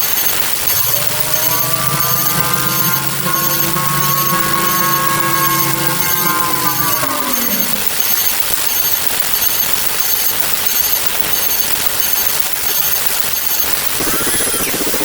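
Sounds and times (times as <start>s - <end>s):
dense rapid crackling: 0.5s - 8.2s.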